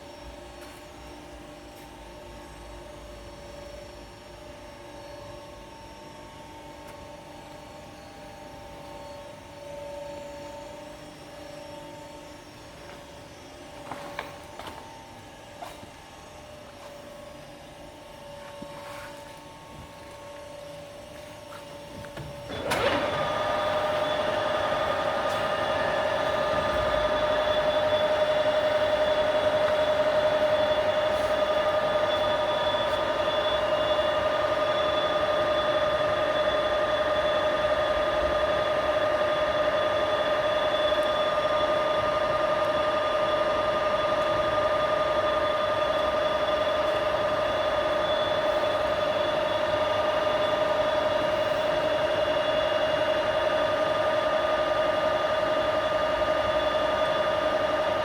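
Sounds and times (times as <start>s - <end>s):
lathe spindle whining: 21.6s - 58.0s.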